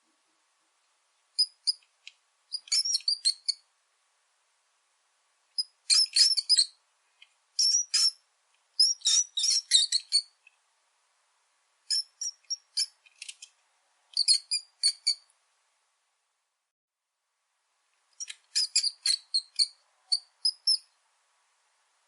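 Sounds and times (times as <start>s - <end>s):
mouse squeaking: 1.4s - 1.9s, 2.5s - 3.6s, 5.6s - 6.8s, 7.6s - 8.2s, 8.8s - 10.4s, 11.9s - 13.5s, 14.1s - 15.3s, 18.2s - 21.0s.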